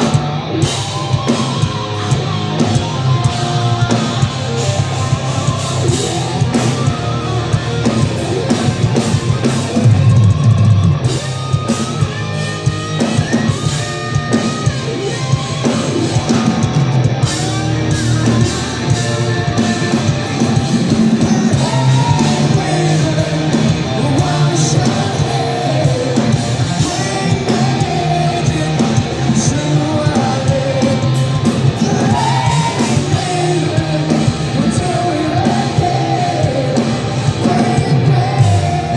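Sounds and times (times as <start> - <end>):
distorted electric guitars: 0.0 - 38.9
drum kit: 0.0 - 38.9
person singing: 17.9 - 38.9.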